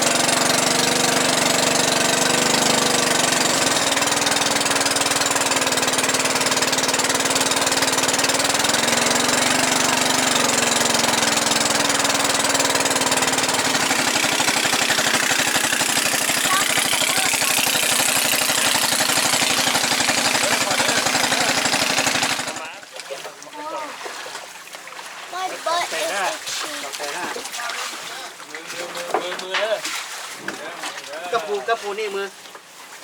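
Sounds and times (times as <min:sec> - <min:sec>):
small engine running: 0:00.0 - 0:22.8.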